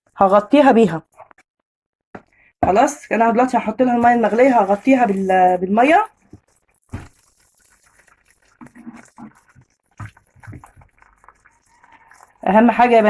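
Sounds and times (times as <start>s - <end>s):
water pouring into a pot: 4.0s - 13.0s.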